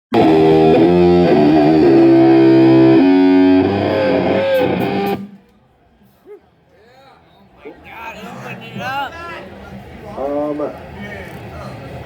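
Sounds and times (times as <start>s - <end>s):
distorted electric guitar: 0.1s - 5.4s.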